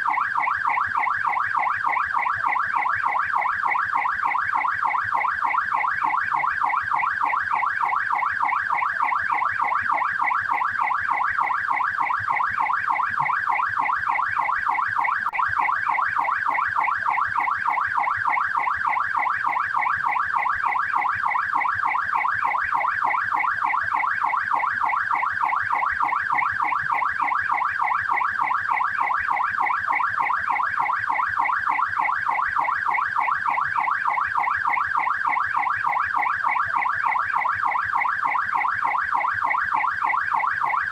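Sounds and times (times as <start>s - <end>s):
police siren yelping: 34.3s - 40.9s.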